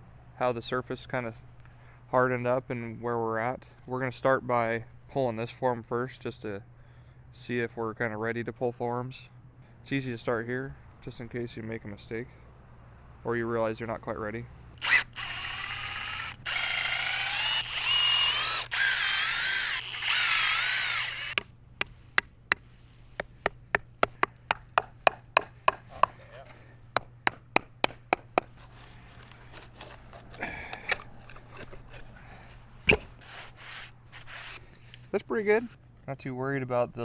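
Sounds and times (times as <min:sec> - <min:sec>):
power drill squealing: 0:14.8 - 0:21.4, 0:30.7 - 0:31.7
sharp clicks: 0:14.8 - 0:21.4.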